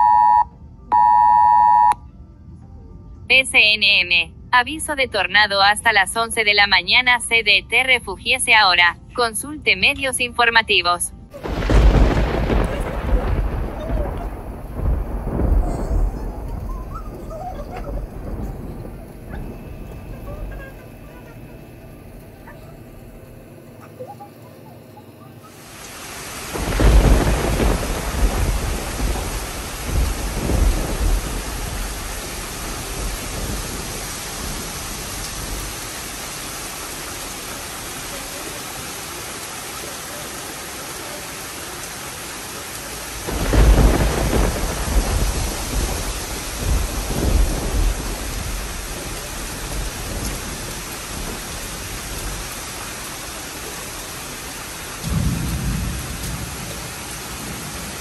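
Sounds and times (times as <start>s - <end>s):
heavy rain: 11.3s - 24.4s, 25.4s - 58.0s
deep rumbling: 11.4s - 23.8s, 26.6s - 36.1s, 43.3s - 53.2s.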